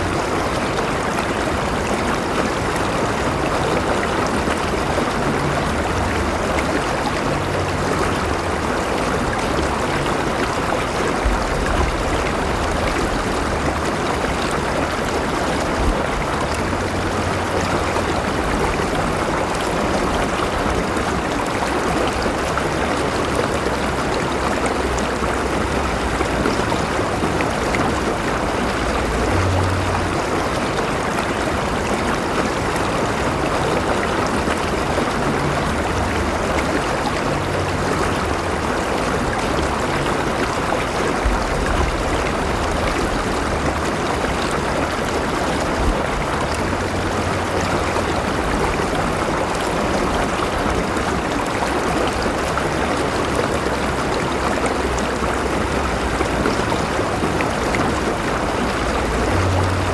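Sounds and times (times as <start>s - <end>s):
stream rushing and gurgling: 0.0s - 59.9s.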